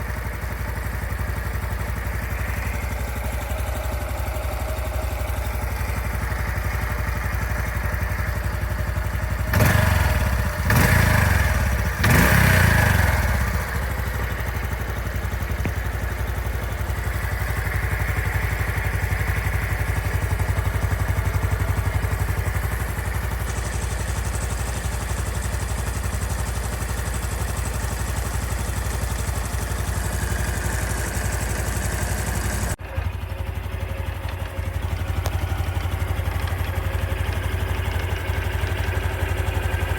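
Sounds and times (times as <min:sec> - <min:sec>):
motorcycle engine idling: 0:00.0 - 0:39.9
engine revving: 0:09.5 - 0:14.0.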